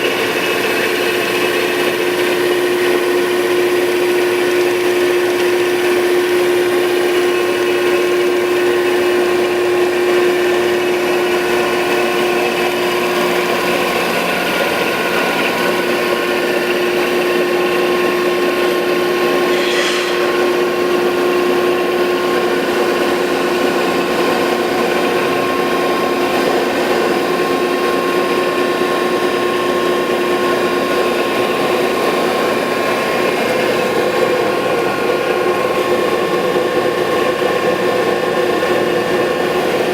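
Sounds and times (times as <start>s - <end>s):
grinder machine whine: 0.0s - 39.9s
brief hiss: 19.4s - 20.7s.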